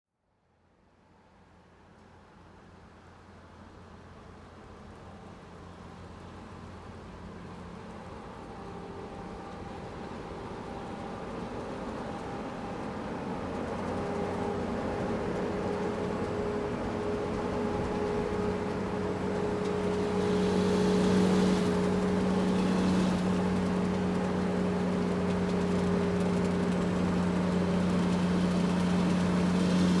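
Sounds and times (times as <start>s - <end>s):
diesel engine running under load: 5.3s - 30.0s.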